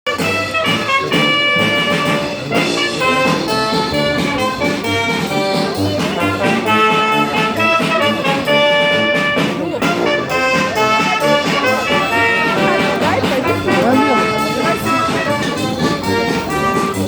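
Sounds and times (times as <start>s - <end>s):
brass instruments holding notes: 0.1s - 17.0s.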